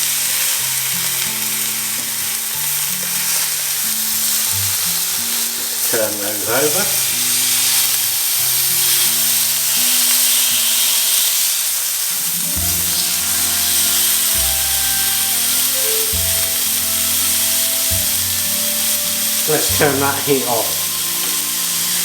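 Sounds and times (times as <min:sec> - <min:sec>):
steaks sizzling on a griddle: 0:00.0 - 0:22.0
background music: 0:12.2 - 0:22.0.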